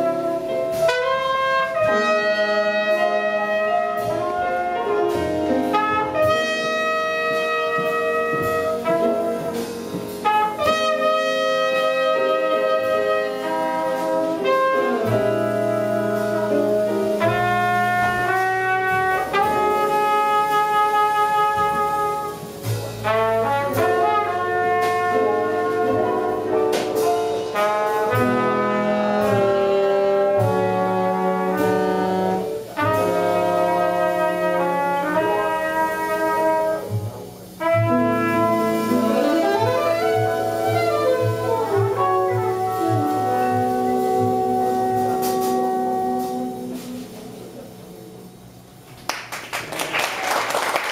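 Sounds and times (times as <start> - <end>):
trumpet: 0.0 - 48.7
drums with light cymbal strokes: 0.0 - 48.9
bass: 0.0 - 50.9
piano: 0.0 - 50.9
saxophone: 37.7 - 47.0.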